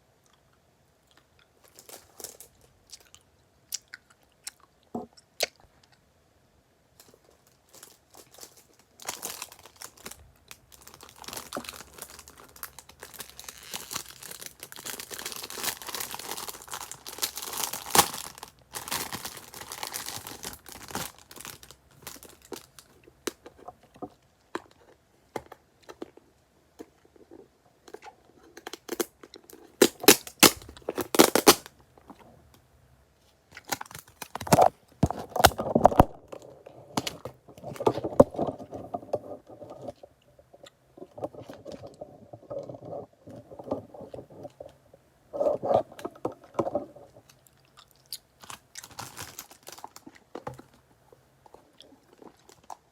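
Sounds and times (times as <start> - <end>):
packaging crinkling and tearing: 7.0 - 23.5, 28.6 - 31.7, 33.6 - 38.5, 48.1 - 50.8.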